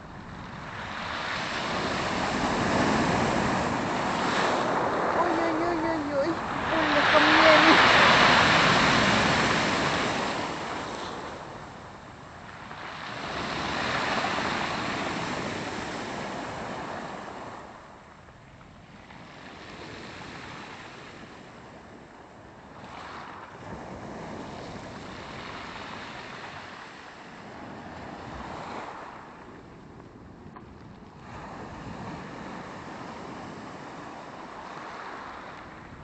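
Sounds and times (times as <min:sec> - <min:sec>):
surf breaking on shore: 0:00.5 - 0:17.8.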